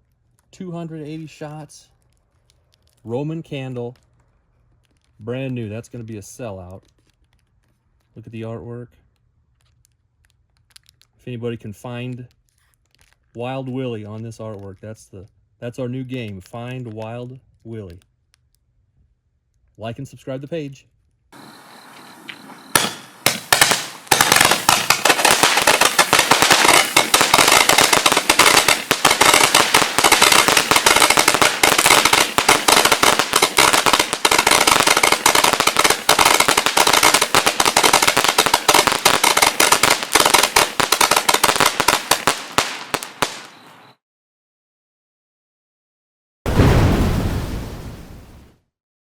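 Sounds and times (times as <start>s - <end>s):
roman candle popping: 9.0s - 11.2s, 22.8s - 43.7s.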